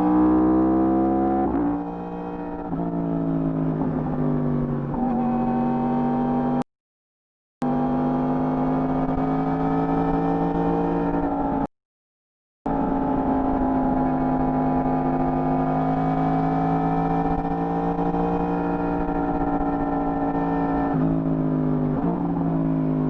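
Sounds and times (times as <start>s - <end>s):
motorcycle engine revving: 0.0s - 6.6s, 12.7s - 22.8s.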